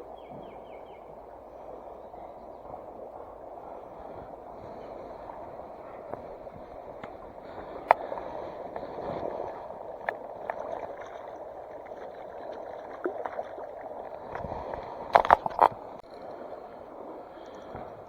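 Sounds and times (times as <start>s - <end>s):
flowing water rushing: 4.8s - 18.0s.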